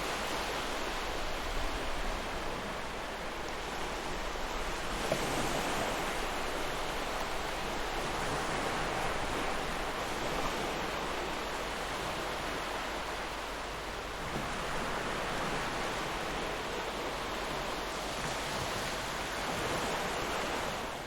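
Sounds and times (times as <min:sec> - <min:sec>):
ocean waves washing on shore: 0:00.0 - 0:21.0.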